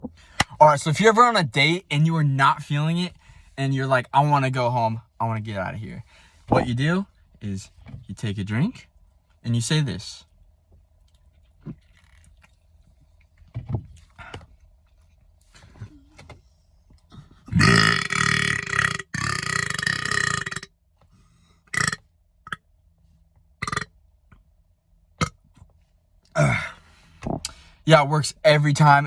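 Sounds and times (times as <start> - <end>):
man belching: 17.5 - 20.7, 21.7 - 22.0, 23.6 - 23.9, 26.3 - 26.8.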